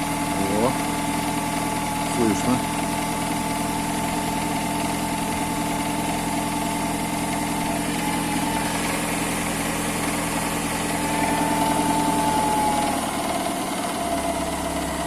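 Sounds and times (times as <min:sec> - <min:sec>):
car engine idling: 0:00.0 - 0:15.0
engine knock: 0:00.0 - 0:15.0
thin steady whine: 0:00.0 - 0:15.0.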